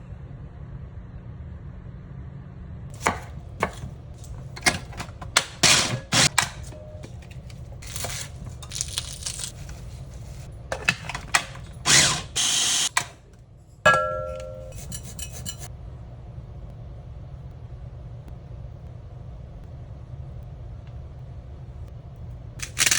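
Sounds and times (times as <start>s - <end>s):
steady low hum: 0.0s - 22.9s
metallic clank with ring: 13.9s - 15.7s.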